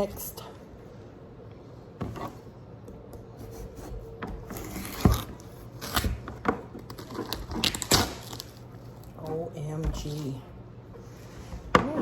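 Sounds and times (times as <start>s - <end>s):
knife cutting watermelon rind: 3.3s - 8.6s.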